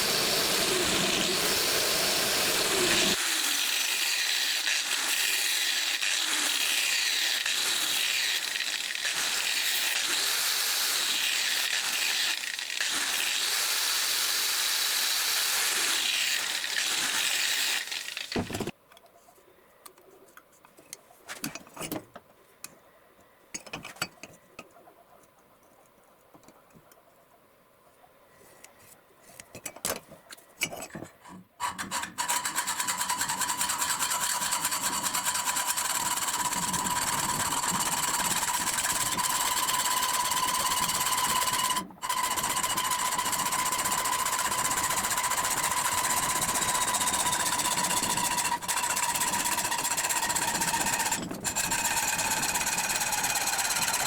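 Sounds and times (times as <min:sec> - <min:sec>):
power tool whining on steel: 0:00.0 - 0:18.7, 0:31.7 - 0:54.0.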